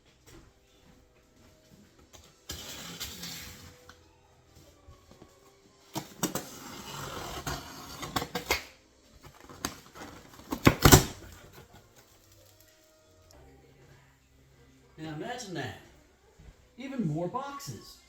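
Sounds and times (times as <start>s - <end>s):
cardboard scraping and rustling: 6.0s - 8.5s, 9.2s - 12.6s.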